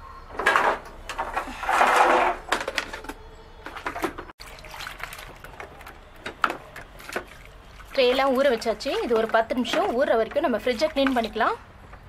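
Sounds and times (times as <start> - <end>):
plastic trays clattering: 0.4 - 3.2
water splashing into a tub: 3.9 - 10.0.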